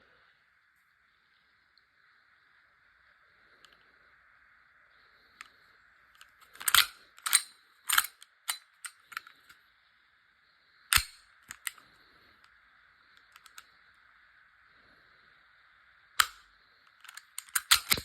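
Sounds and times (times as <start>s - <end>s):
airsoft pistol clacks: 6.2s - 9.5s, 10.9s - 11.8s, 13.2s - 13.7s, 16.2s - 18.0s
lighter clicks: 10.9s - 11.8s, 16.2s - 16.5s.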